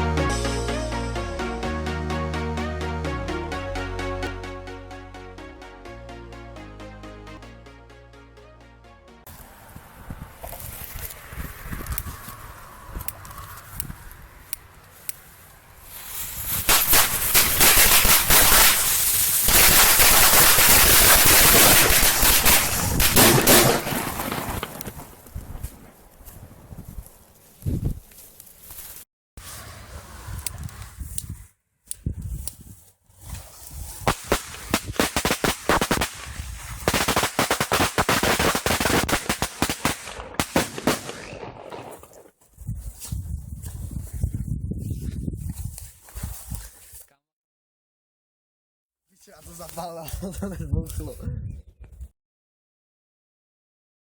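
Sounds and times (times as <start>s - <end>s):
firecrackers banging: 16.6s - 26.0s, 34.1s - 42.2s.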